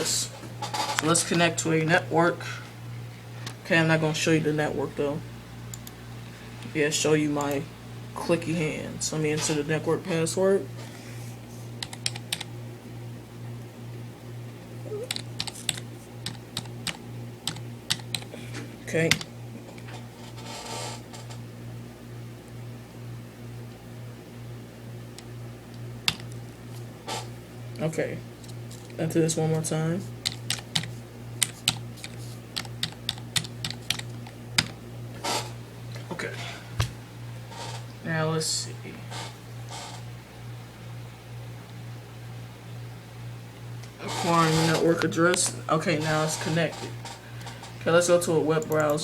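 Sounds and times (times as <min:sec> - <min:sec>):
low steady hum: 0:00.0 - 0:49.0
computer keyboard keys clicking: 0:11.8 - 0:12.5, 0:15.0 - 0:18.3, 0:26.0 - 0:26.4, 0:30.2 - 0:34.8.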